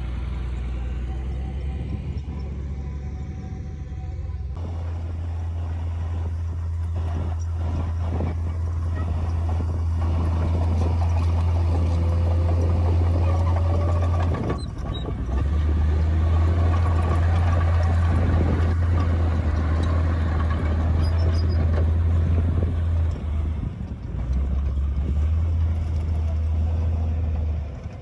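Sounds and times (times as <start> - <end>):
bulldozer diesel engine rumbling: 0.0 - 28.0.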